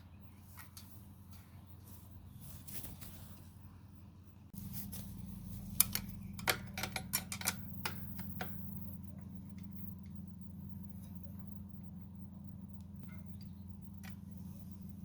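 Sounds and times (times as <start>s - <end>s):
steady low hum: 0.0s - 15.0s
spanners clicking on metal: 5.8s - 8.6s.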